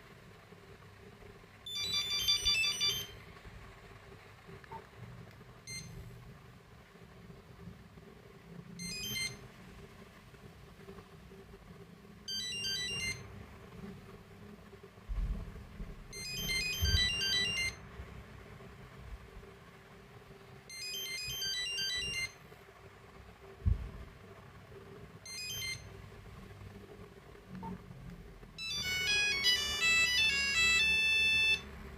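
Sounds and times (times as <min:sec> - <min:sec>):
beeping phone ringtone melody: 0:01.7 - 0:03.2, 0:08.8 - 0:09.4, 0:12.3 - 0:13.2, 0:16.1 - 0:17.8, 0:20.7 - 0:22.4, 0:25.3 - 0:25.9, 0:28.6 - 0:31.8.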